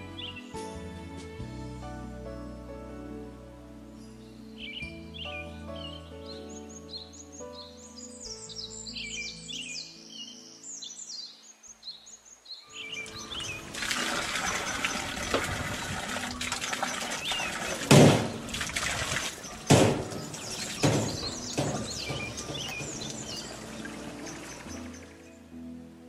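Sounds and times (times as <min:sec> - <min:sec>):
soft background music: 0:00.0 - 0:26.0
birds chirping: 0:04.6 - 0:25.5
sharp knocks: 0:17.8 - 0:18.7, 0:19.5 - 0:23.6.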